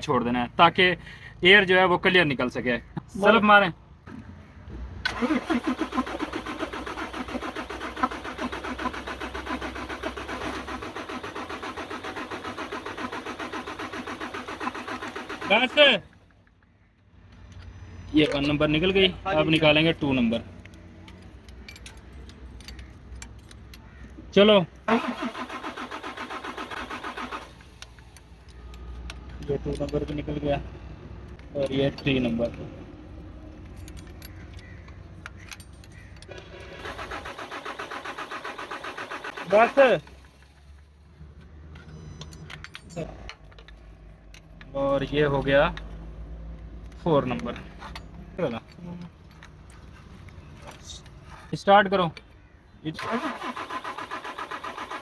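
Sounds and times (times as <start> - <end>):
engine cranking on starter: 5.0 - 16.0, 24.9 - 28.4, 36.2 - 41.0, 52.9 - 55.0
diesel engine cranking: 5.0 - 24.1, 24.7 - 51.5, 52.9 - 55.0.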